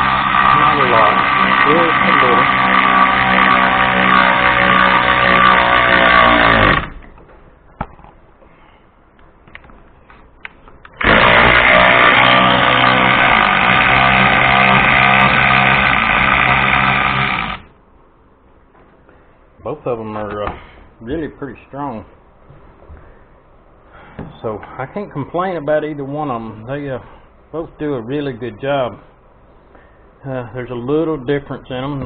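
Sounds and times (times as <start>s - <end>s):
electric ratchet running: 0.0s - 7.0s, 11.0s - 17.7s.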